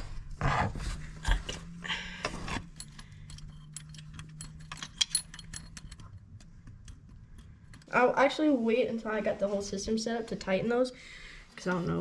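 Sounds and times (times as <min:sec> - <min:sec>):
metal bolts clinking: 0:02.7 - 0:07.9.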